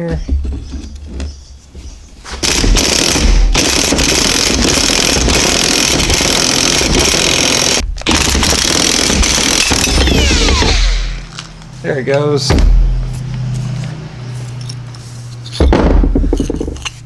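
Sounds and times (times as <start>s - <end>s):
pneumatic tool hammering: 2.2s - 11.3s.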